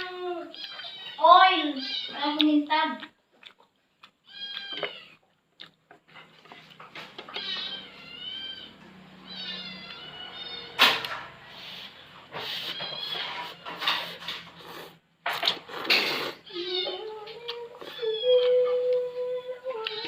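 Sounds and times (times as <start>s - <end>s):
cat meowing: 7.3s - 11.0s.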